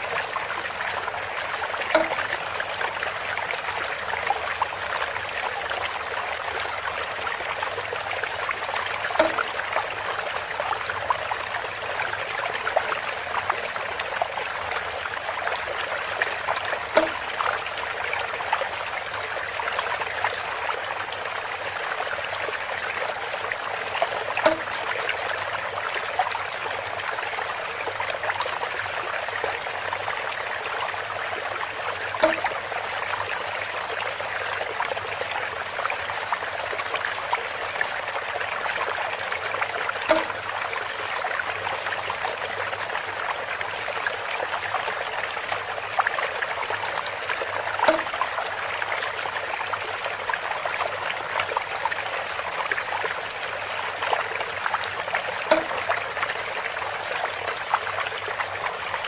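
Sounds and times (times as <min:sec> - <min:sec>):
water trickling from fountain: 0:00.0 - 0:59.0
hollow bamboo knock: 0:01.9 - 0:02.4, 0:09.2 - 0:09.6, 0:16.9 - 0:17.5, 0:24.4 - 0:24.8, 0:32.2 - 0:32.6, 0:40.1 - 0:40.4, 0:47.8 - 0:48.3, 0:55.5 - 0:55.9.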